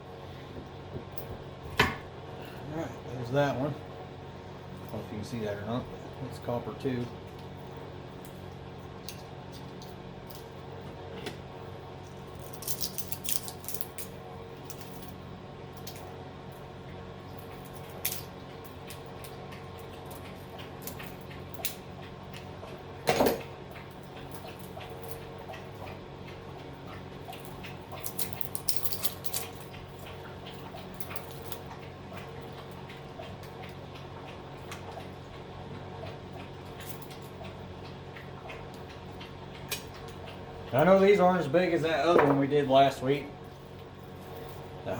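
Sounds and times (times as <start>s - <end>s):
steady low hum: 0.0s - 44.9s
metal parts clinking: 12.4s - 14.1s, 28.1s - 29.5s.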